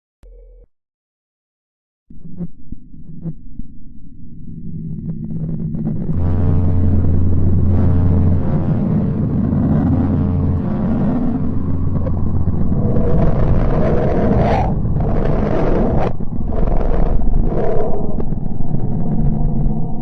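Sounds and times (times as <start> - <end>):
eerie droning rumble: 2.1 - 20.0
steady low hum: 2.1 - 20.0
hissing swells: 9.3 - 20.0.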